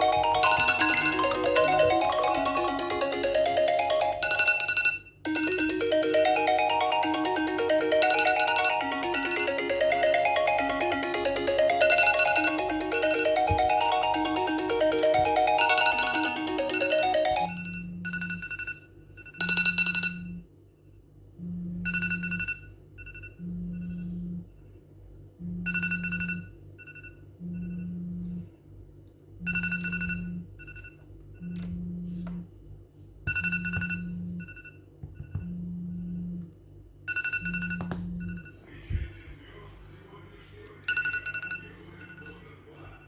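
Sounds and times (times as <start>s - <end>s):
melodic phone ringtone: 0.0s - 20.4s, 21.8s - 24.2s, 29.5s - 30.9s, 33.3s - 34.7s, 37.1s - 38.6s, 40.8s - 42.6s.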